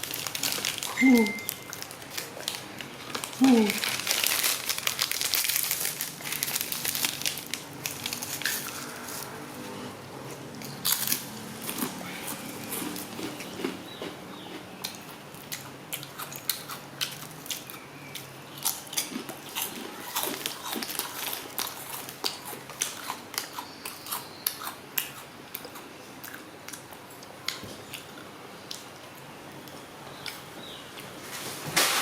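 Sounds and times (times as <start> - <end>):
plastic packaging crinkling: 0.0 - 9.3.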